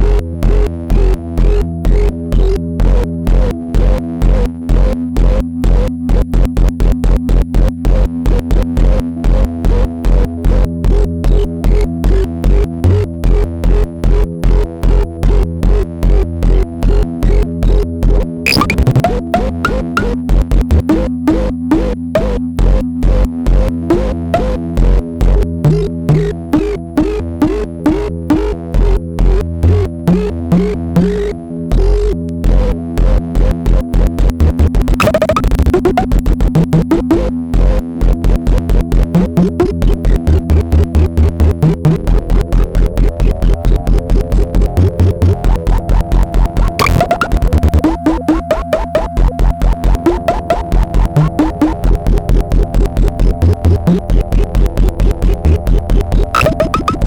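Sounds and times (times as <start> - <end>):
deep synth bass: 0.0 - 57.0
fast electronic pulse: 10.9 - 13.1, 18.5 - 23.3, 23.9 - 32.2, 34.0 - 57.0
short pitched blips: 18.5 - 22.4, 29.6 - 31.2, 34.4 - 37.3, 46.8 - 49.1, 51.2 - 51.8, 56.3 - 57.0.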